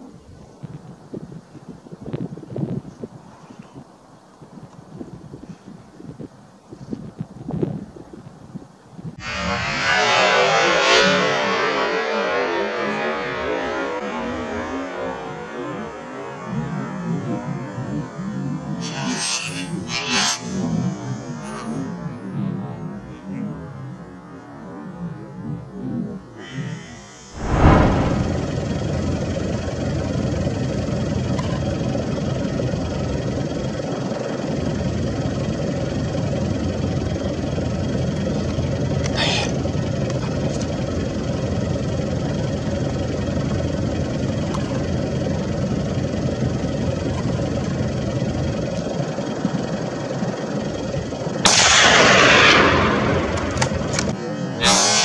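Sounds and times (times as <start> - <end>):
steady low rumbling: 27.3 - 30.2, 45.0 - 54.6
loud gunshot: 27.4 - 28.9, 51.5 - 54.0.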